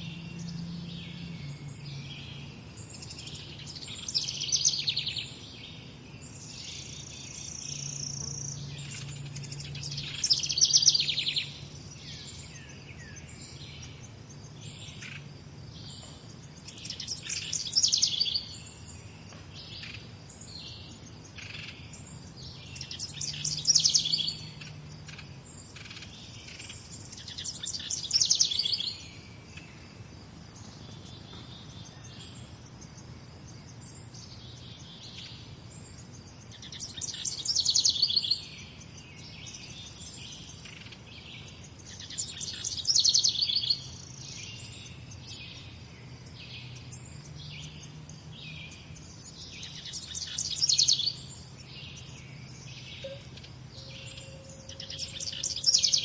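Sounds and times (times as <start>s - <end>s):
birds chirping: 0.0s - 56.0s
rapid trilled birdsong: 0.0s - 56.0s.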